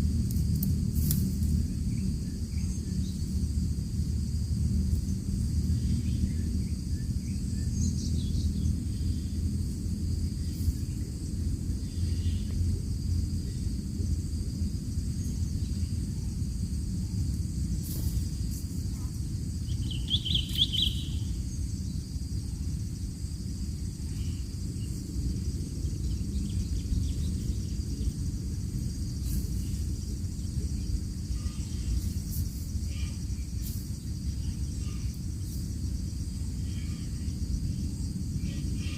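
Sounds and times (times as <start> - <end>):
insect buzz: 0.0 - 38.9
bird chirping: 19.6 - 21.6.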